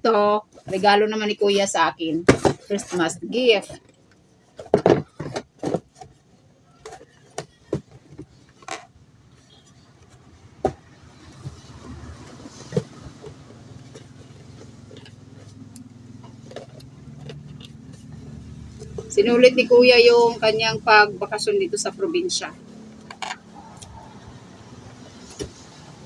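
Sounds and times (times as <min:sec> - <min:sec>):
handling knocks and clicks: 0:02.2 - 0:19.4, 0:22.5 - 0:26.0
vehicle engine hum: 0:07.8 - 0:26.0.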